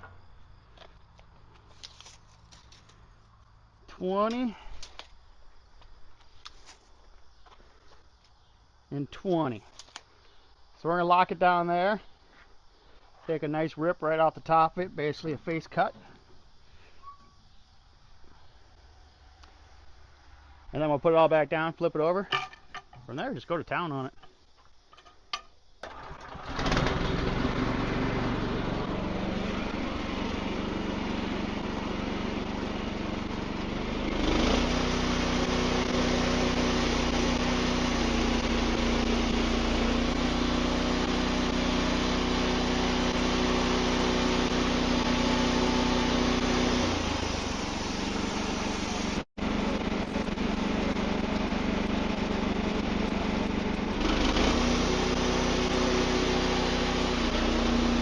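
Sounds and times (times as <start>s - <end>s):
band sawmill engine running: 25.8s - 58.0s
bandsaw blade cutting log: 33.4s - 58.0s.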